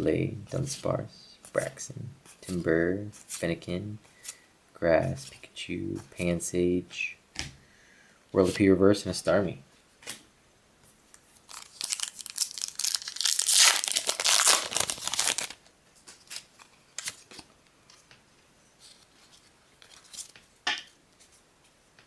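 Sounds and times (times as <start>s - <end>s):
foil wrapper tearing and crinkling: 11.4s - 15.6s.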